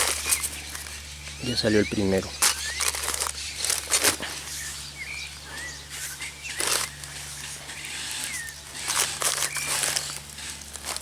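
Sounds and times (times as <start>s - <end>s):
birds chirping: 0.0s - 10.9s
steady low hum: 0.0s - 11.0s
rustle or clatter: 6.0s - 11.0s.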